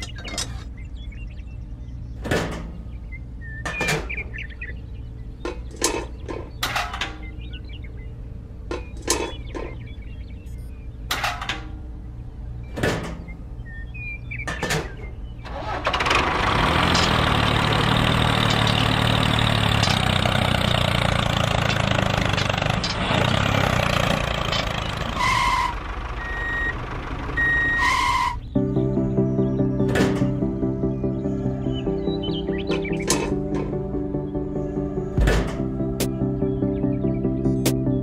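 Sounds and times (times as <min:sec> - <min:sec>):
engine running: 0:14.6 - 0:38.0.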